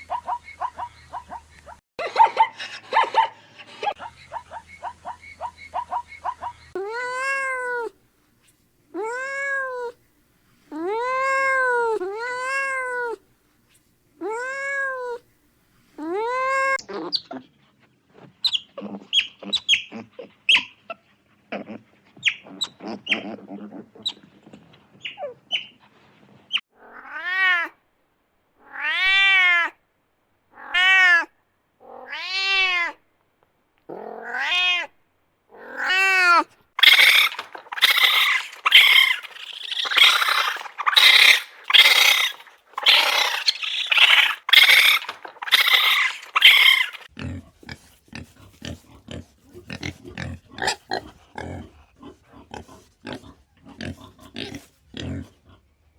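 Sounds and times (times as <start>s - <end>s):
cat meowing: 6.8s - 7.9s, 9.0s - 10.0s, 10.9s - 13.2s, 14.2s - 15.2s, 26.8s - 27.7s, 28.6s - 29.8s, 30.6s - 33.0s, 34.0s - 34.9s, 35.6s - 39.1s.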